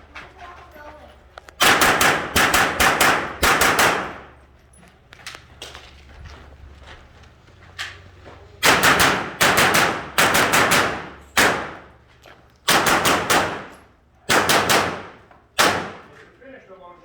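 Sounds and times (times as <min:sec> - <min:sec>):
rapid gunfire: 0:01.6 - 0:04.3, 0:08.6 - 0:11.9, 0:12.7 - 0:13.7, 0:14.3 - 0:16.1.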